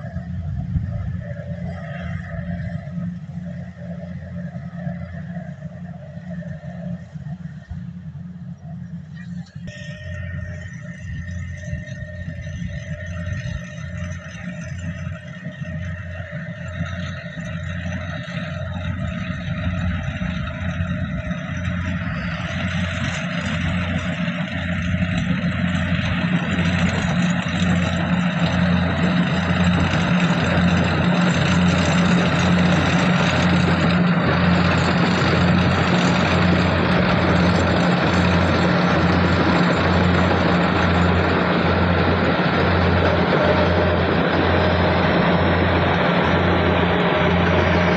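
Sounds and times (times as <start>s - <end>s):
combine harvester engine hum: 0.0s - 47.9s.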